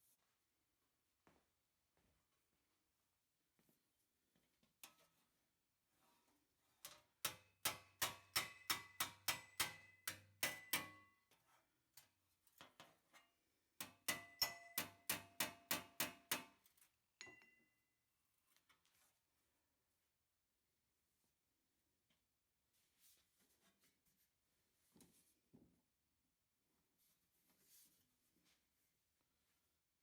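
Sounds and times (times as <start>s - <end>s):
hammer striking metal: 7.3s - 11.0s, 13.8s - 16.5s, 17.2s - 17.6s.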